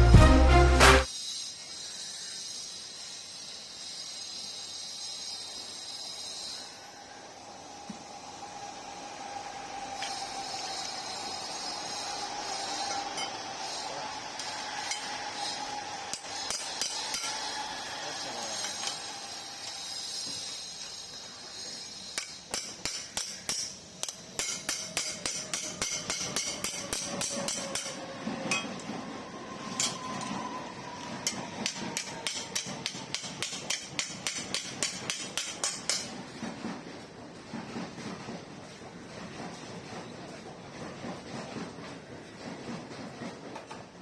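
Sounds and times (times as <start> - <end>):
hammer blows on metal: 22.1 - 28.7.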